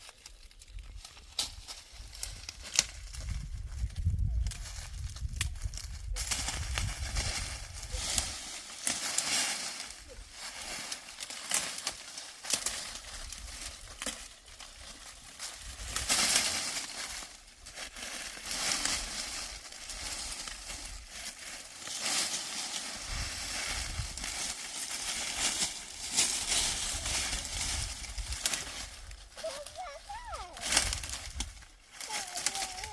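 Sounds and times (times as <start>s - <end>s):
small crackles and clicks: 0.0s - 6.9s, 10.6s - 17.0s, 24.2s - 32.9s
rustling and crunching: 0.0s - 32.9s.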